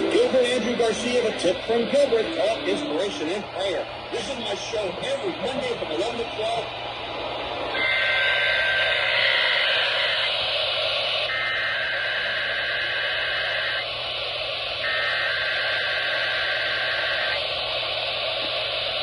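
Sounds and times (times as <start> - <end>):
two-tone digital warble: 0.0 - 3.6
radio static hiss: 0.0 - 19.0.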